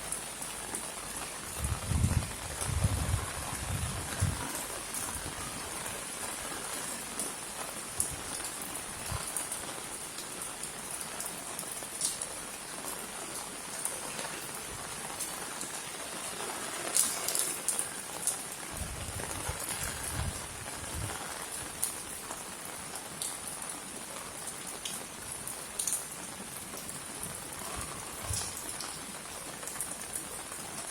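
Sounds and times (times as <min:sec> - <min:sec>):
steady rain hiss: 0:00.0 - 0:30.9
drips and splashes: 0:16.9 - 0:18.6, 0:24.8 - 0:30.2.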